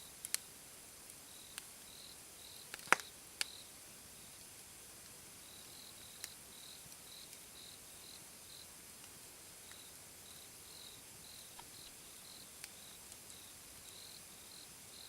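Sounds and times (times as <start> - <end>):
cricket chirping: 1.3 - 4.3, 5.4 - 8.7, 9.6 - 15.0
campfire pops: 2.7 - 3.6, 11.4 - 12.0.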